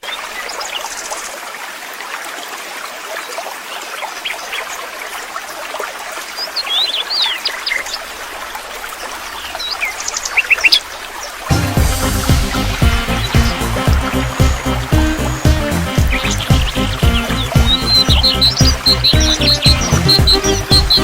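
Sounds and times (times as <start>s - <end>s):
small birds chirping: 9.0s - 21.0s
waterfall rushing: 11.0s - 21.0s.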